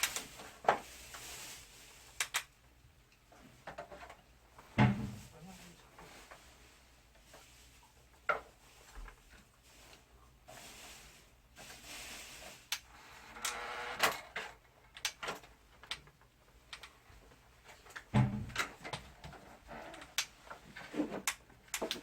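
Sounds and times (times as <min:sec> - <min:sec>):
plastic parts clicking and knocking: 0:02.2 - 0:02.5, 0:12.7 - 0:22.0
heavy thump: 0:04.8 - 0:05.3.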